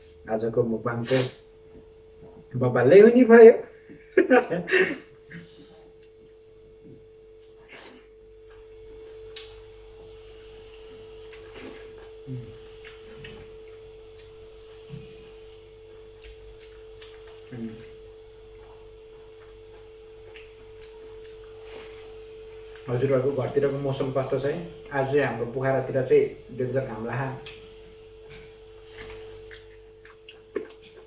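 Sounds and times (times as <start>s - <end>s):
faint humming tone: 0.0s - 31.0s
chewing clicks and mouth smacks: 12.8s - 14.4s, 16.2s - 17.5s, 18.5s - 21.5s, 28.9s - 31.0s.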